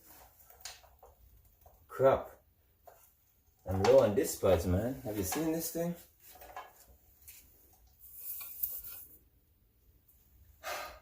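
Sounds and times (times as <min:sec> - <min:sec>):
person breathing: 0:10.5 - 0:11.0.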